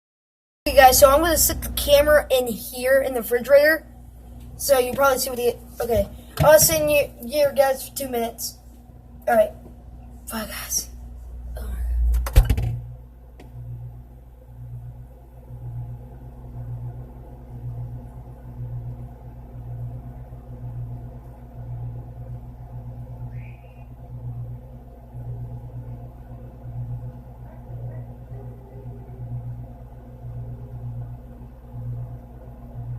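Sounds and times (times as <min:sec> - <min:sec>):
refrigerator humming: 0:00.7 - 0:32.9
fridge door thump: 0:12.1 - 0:12.9.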